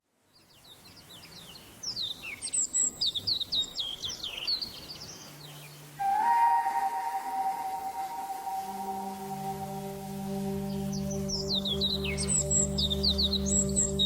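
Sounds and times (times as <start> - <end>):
songbirds chirping: 0.0 - 14.0
steady ringing musical tone: 6.0 - 14.0.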